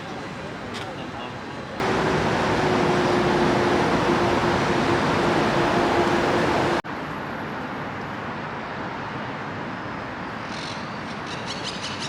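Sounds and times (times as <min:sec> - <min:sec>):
city traffic hum: 0:00.0 - 0:12.0
loud noise with low steady tone: 0:01.8 - 0:06.8.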